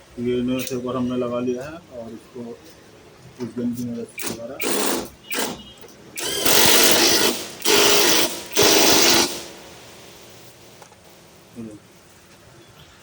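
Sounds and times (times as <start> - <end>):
impact wrench rattling: 4.2 - 10.9.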